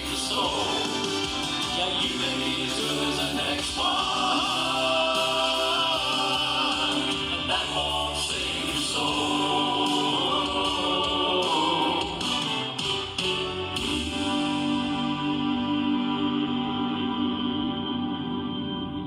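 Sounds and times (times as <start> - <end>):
choir voices holding notes: 0.0 - 19.0
steady musical accompaniment: 0.0 - 19.0.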